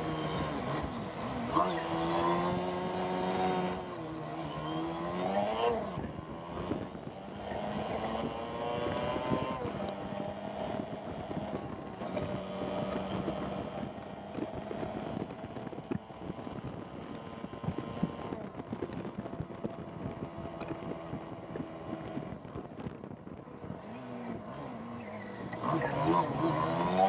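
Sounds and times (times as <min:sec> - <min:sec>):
wind buffeting microphone: 0:04.9 - 0:24.7.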